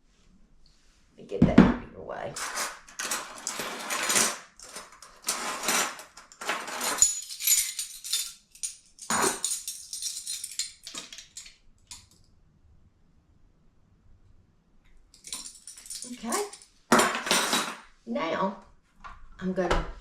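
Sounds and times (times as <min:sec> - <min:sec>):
kitchen items clinking and rattling: 0:02.4 - 0:12.1, 0:15.2 - 0:17.8.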